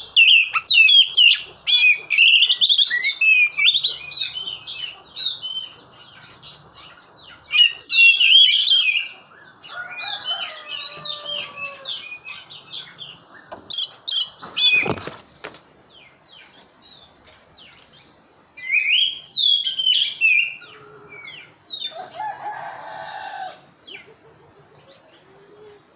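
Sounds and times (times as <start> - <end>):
bird singing whistled phrases: 0.0 - 4.4, 18.6 - 20.9.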